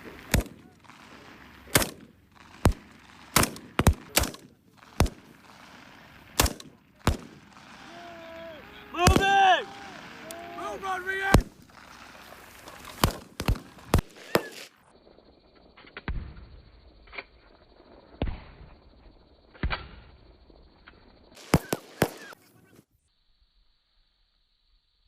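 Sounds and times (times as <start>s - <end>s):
gunshots with echo: 9.0s - 10.0s, 21.4s - 22.4s.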